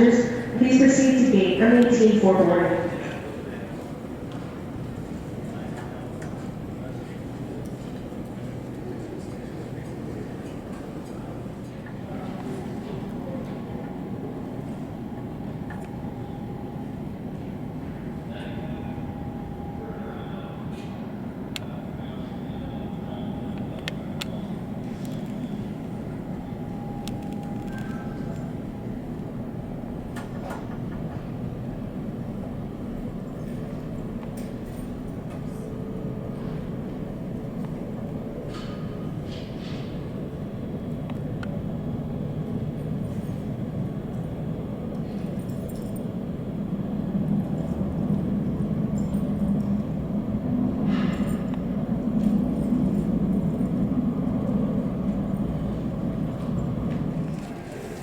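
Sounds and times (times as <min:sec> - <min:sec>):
jet engines rumbling: 0:00.0 - 0:45.4.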